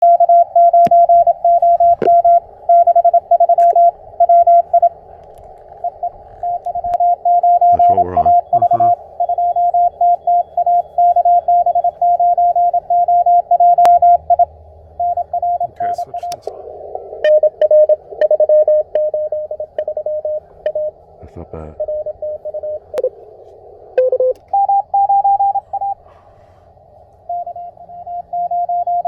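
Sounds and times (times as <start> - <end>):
morse code tone: 0.0 - 4.9, 5.8 - 16.4, 17.2 - 21.0, 21.8 - 23.2, 24.0 - 26.0, 27.3 - 29.0
radio receiver hiss: 15.6 - 17.4.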